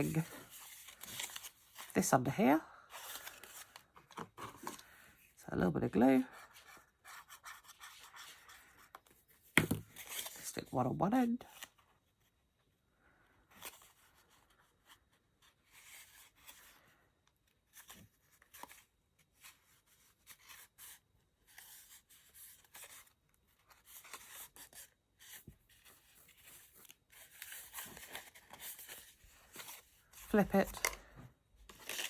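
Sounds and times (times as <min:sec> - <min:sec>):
card rustling and tapping: 0:08.9 - 0:10.3.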